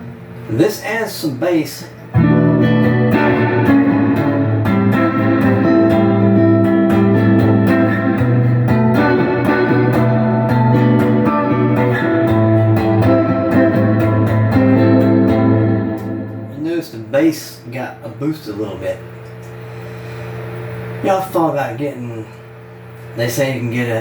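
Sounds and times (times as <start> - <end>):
overdriven electric guitar: 2.1 - 16.6.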